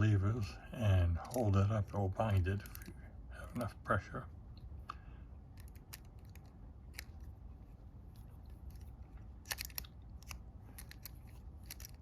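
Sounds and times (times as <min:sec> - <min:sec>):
lock pick clicking in padlock: 0:09.4 - 0:12.0.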